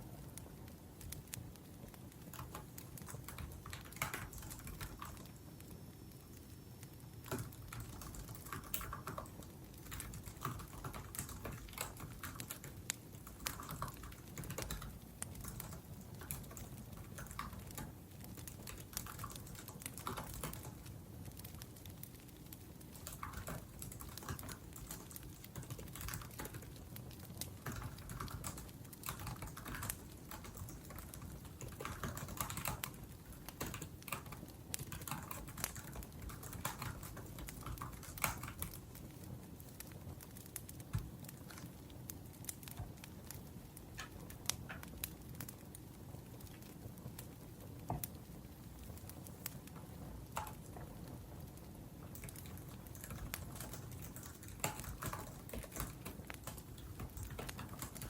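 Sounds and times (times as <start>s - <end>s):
wood fire crackling: 0.0s - 58.0s
laptop keyboard typing: 2.0s - 5.4s, 7.2s - 39.1s, 52.1s - 58.0s.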